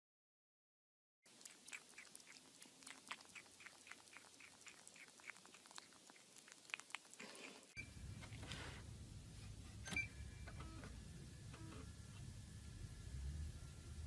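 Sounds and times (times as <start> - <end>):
animal chewing: 1.3 - 8.4.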